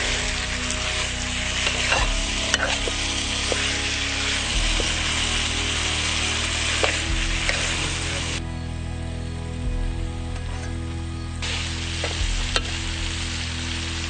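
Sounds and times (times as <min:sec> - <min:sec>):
food sizzling in a pot: 0:00.0 - 0:08.4, 0:11.4 - 0:14.0.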